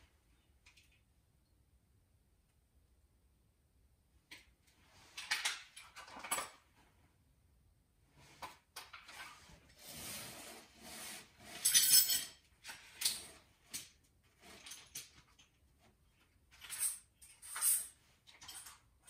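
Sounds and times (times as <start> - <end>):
scraping and rubbing of tools: 8.3 - 15.4.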